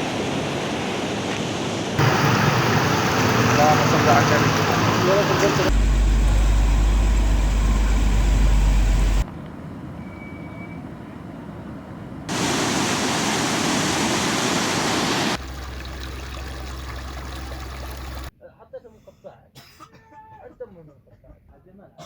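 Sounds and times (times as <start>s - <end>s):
floodwater rushing: 0.0s - 9.2s, 12.3s - 18.3s.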